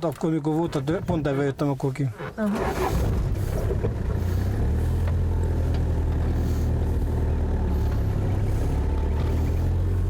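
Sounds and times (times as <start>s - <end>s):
car engine humming: 2.2s - 10.0s.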